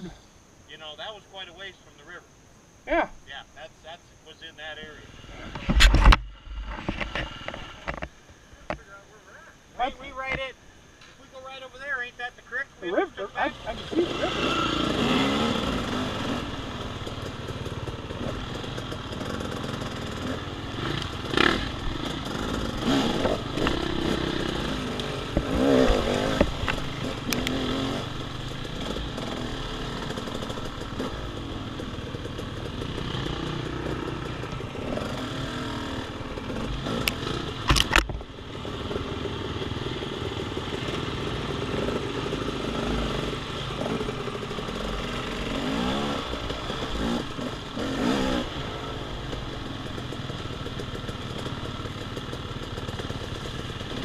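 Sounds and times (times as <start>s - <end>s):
sharp clatters and knocks: 5.5s - 8.9s, 36.6s - 38.3s
dirt bike engine running: 11.3s - 54.0s.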